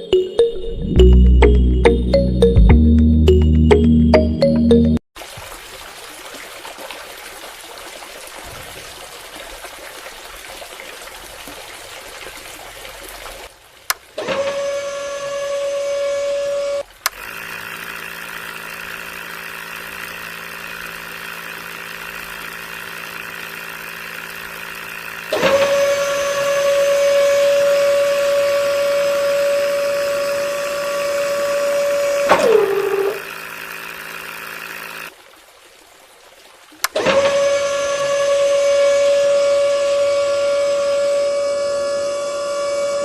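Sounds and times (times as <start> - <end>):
small electric motors whining: 14.2 - 35.1, 37.0 - 43.0
high-pitched motor: 14.8 - 35.1, 37.4 - 43.0.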